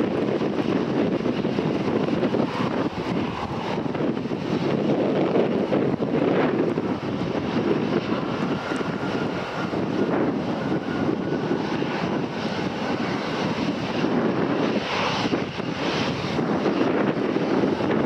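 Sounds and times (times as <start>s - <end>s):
aircraft engine rushing: 0.0s - 18.0s.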